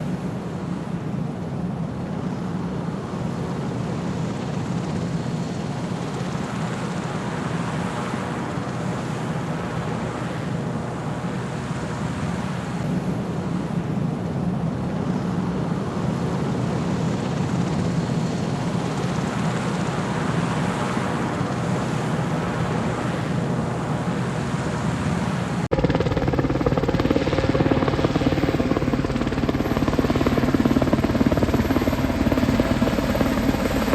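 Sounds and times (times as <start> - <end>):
helicopter rotor and engine drone: 0.0 - 33.9.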